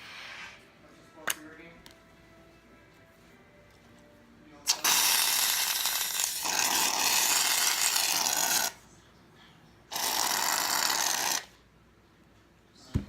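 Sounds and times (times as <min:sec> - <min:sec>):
aerosol can spraying: 0:04.7 - 0:08.7.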